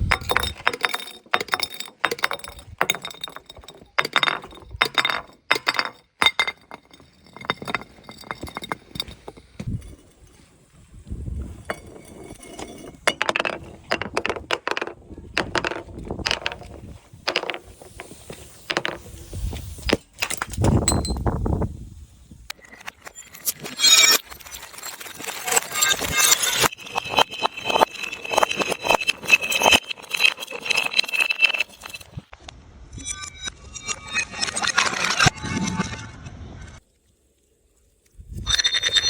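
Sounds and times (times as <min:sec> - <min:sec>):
glass bottles breaking: 0:22.6 - 0:32.2.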